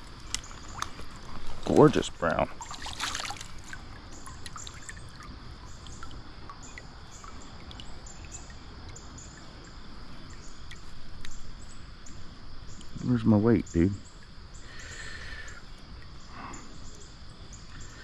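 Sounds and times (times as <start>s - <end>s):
stream water running: 0.0s - 18.0s
faint ticks: 4.3s - 13.0s.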